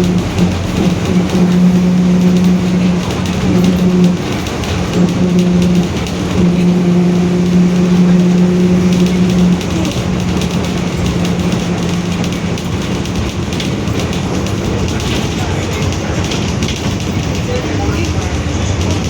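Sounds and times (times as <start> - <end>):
differential whine: 0.0 - 15.0
bus engine: 0.0 - 19.0
road noise: 0.0 - 19.0.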